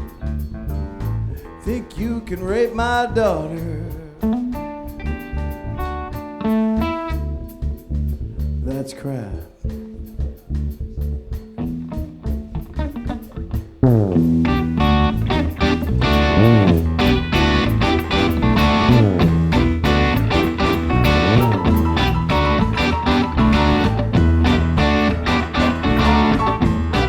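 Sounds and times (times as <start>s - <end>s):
ticking cymbals: 0.0s - 27.0s
rock band playing: 4.2s - 8.0s, 11.4s - 27.0s
electric guitar sliding notes: 11.6s - 27.0s.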